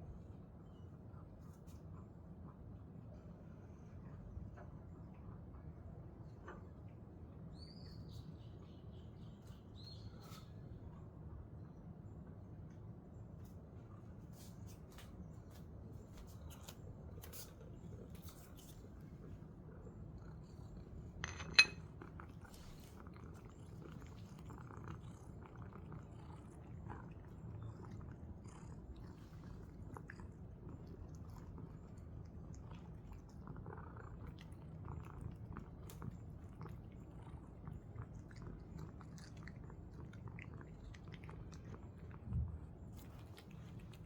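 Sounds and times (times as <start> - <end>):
cat chewing and crunching treats: 21.8 - 44.0.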